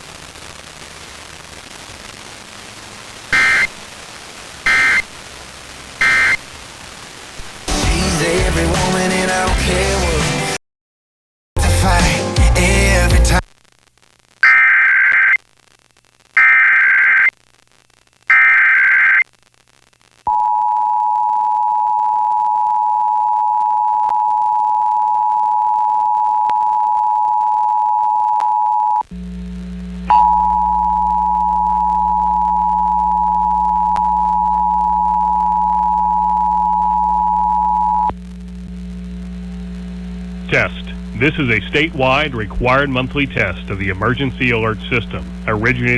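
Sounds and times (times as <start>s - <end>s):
mains hum: 0.0s - 10.2s, 11.9s - 45.9s
warbling data tones: 3.3s - 3.8s, 4.6s - 5.1s, 16.4s - 17.3s.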